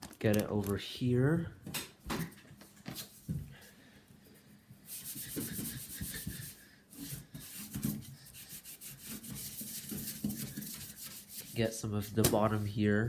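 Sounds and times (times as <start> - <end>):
gritty scrubbing on metal: 4.8 - 12.8.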